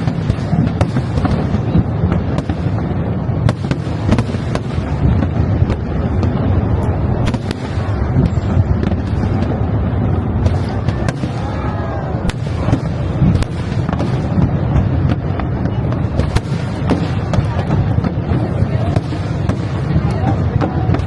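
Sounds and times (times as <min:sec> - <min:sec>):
fireworks bangs and crackles: 0:00.0 - 0:21.0
whistling fireworks: 0:00.0 - 0:21.0
deep rumble: 0:00.3 - 0:21.0.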